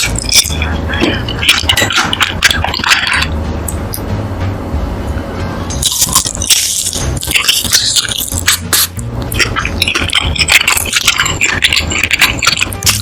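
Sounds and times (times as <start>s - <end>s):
music playing: 0.0s - 13.0s
sticky mouth clicks: 5.8s - 13.0s
wet chewing and biting: 5.8s - 13.0s.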